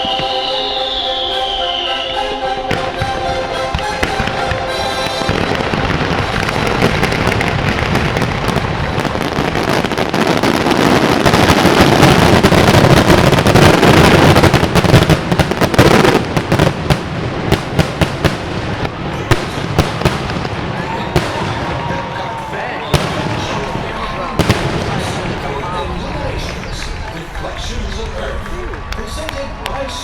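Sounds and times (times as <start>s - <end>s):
fireworks bangs and crackles: 0.0s - 1.0s, 2.7s - 30.0s.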